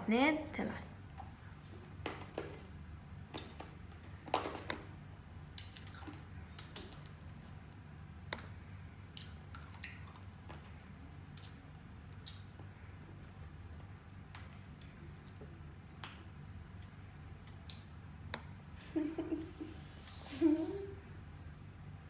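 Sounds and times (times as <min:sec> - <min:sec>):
small clicks and crinkles: 0:05.5 - 0:18.5.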